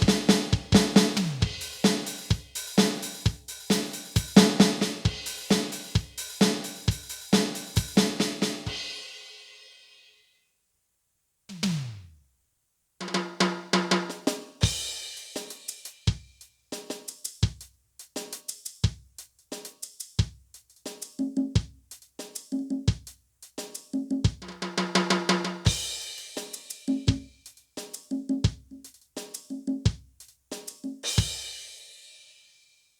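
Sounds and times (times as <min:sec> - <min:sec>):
electronic drum beat: 0:00.0 - 0:08.8, 0:14.1 - 0:31.4
drum fills: 0:00.0 - 0:09.1, 0:11.5 - 0:12.2, 0:13.0 - 0:31.7.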